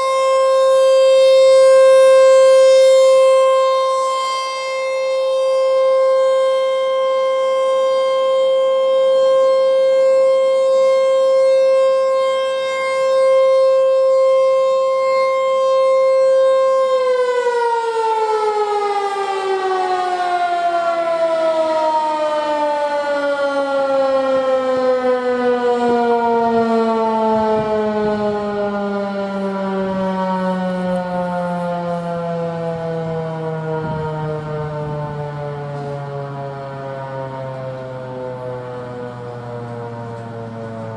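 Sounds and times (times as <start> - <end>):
warning siren winding down: 0.0 - 40.9.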